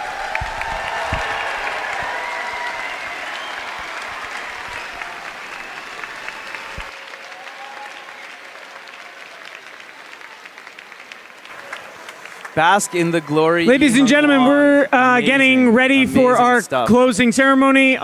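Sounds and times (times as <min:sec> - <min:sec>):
audience applauding: 0:00.0 - 0:14.9.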